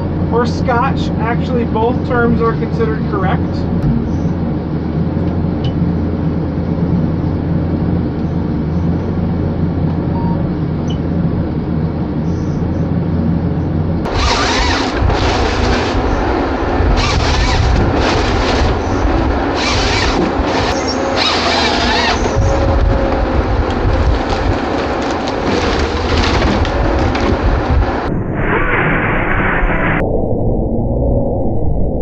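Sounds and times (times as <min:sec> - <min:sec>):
diesel engine running: 0:00.0 - 0:28.1
loud noisy bursts: 0:14.0 - 0:29.9.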